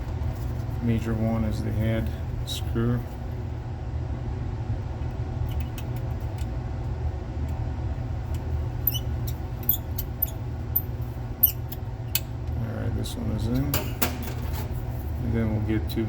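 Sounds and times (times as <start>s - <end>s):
steady low hum: 0.0s - 16.0s
screwdriver metallic clicks and squeaks: 8.8s - 11.8s.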